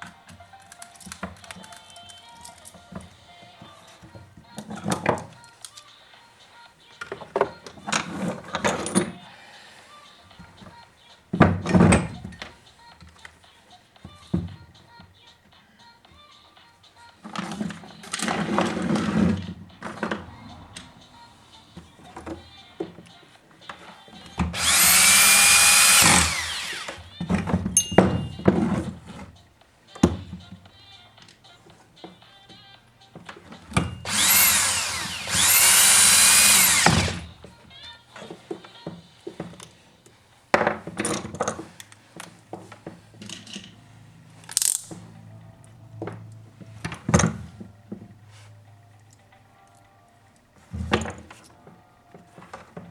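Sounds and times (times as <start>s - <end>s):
parts and tools clicking and knocking: 0.0s - 6.0s, 6.9s - 9.3s, 10.3s - 15.2s, 17.2s - 21.1s, 21.7s - 37.6s, 38.2s - 43.8s, 44.4s - 48.1s, 49.0s - 52.9s
small power tool spinning: 24.4s - 27.2s, 33.9s - 37.4s
metal tools clinking and knocking: 27.7s - 28.8s, 43.2s - 43.8s.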